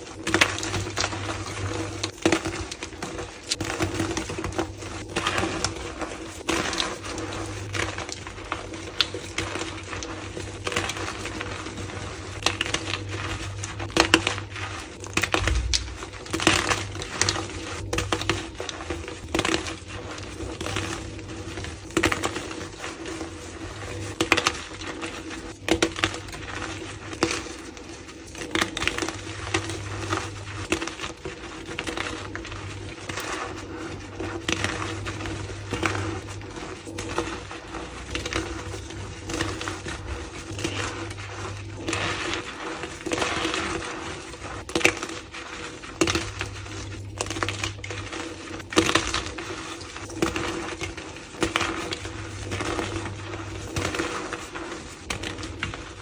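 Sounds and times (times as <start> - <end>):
steady low hum: 0.0 - 24.2
chalk crunching and crackling: 0.0 - 56.0.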